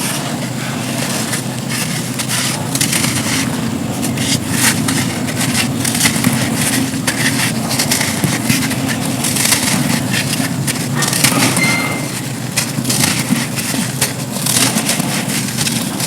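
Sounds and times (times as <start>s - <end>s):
steady low rumble: 1.0s - 15.1s.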